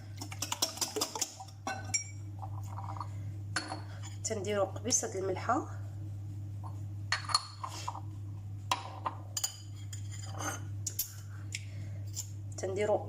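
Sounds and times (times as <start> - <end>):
steady low hum: 0.0 - 13.0
utensils clinking against bowl: 0.2 - 4.2, 8.7 - 11.2.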